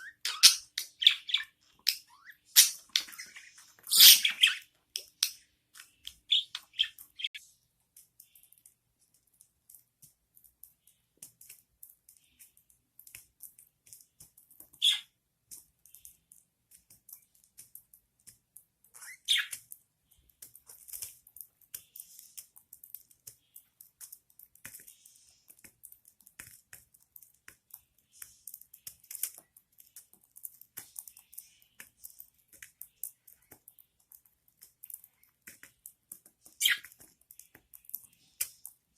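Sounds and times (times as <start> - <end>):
sharp bird chirps: 0.0 - 4.7
soft ticks and rustles: 1.6 - 38.9.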